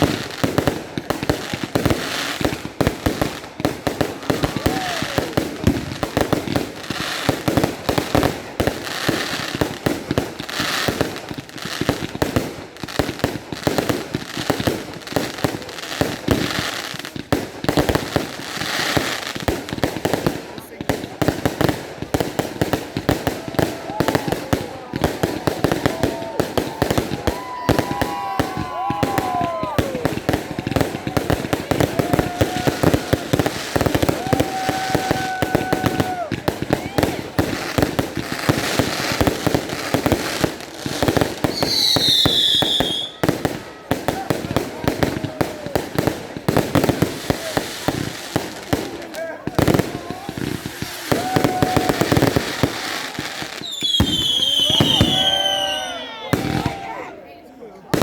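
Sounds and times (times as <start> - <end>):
fireworks bangs and crackling: 0.0 - 58.0
firework whistles: 41.5 - 43.2, 50.3 - 56.8.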